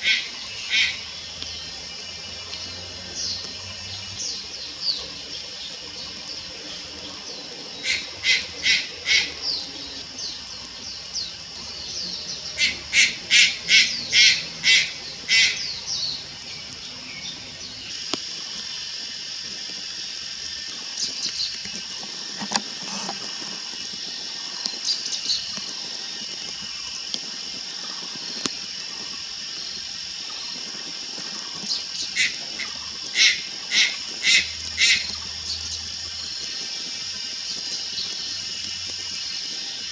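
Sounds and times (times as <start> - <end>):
high-pitched hiss: 0.0 - 39.9
heron calling rapid notes: 4.4 - 17.9, 31.9 - 35.4.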